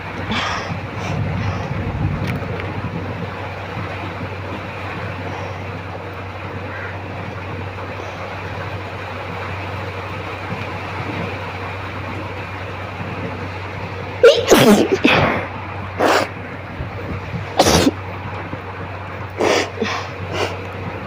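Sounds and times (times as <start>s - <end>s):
background hum: 0.0s - 21.0s
woman sneezing: 14.2s - 15.3s.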